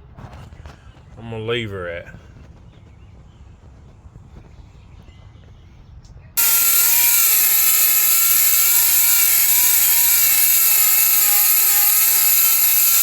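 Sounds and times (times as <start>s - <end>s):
angle grinder whining: 6.4s - 13.0s.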